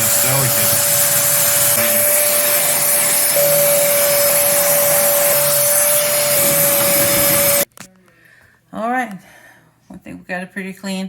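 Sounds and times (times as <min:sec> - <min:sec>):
vacuum cleaner running: 0:00.0 - 0:07.7.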